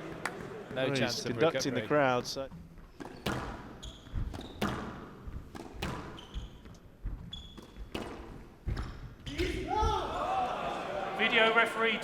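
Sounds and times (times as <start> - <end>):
shoes squeaking on wooden floor: 2.5 - 9.2
racket hitting ball: 3.0 - 6.5, 7.1 - 9.6
ball hitting court walls: 3.0 - 10.1.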